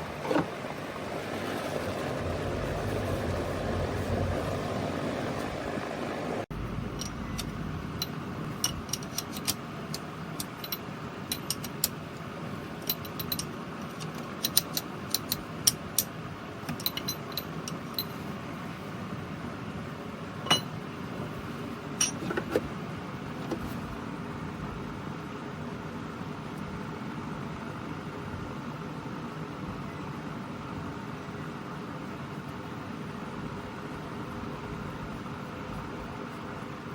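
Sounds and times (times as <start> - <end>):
metallic tool clinks: 20.5 - 20.8.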